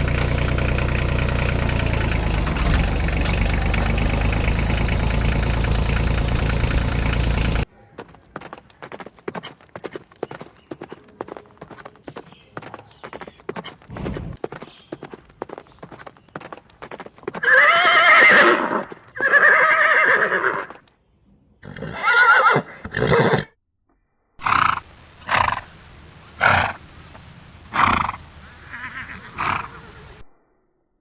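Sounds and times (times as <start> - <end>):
hooves clip-clopping: 2.5 - 19.5, 20.2 - 20.9
horse neighing: 17.4 - 20.8, 21.6 - 23.5.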